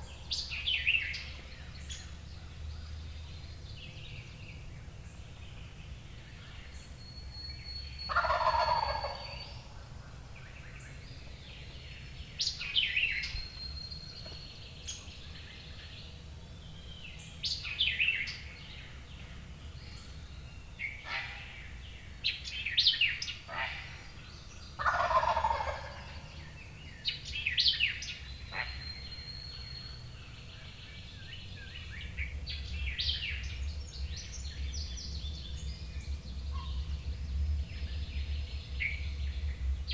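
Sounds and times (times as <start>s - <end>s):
songbirds chirping and singing: 0.0s - 39.9s
turkey gobbling: 8.1s - 9.5s, 24.8s - 26.3s.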